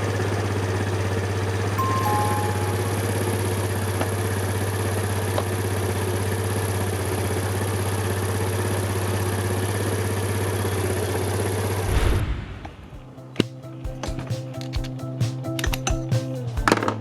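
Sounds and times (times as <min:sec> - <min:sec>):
scooter engine idling: 0:00.0 - 0:01.8, 0:02.4 - 0:11.8.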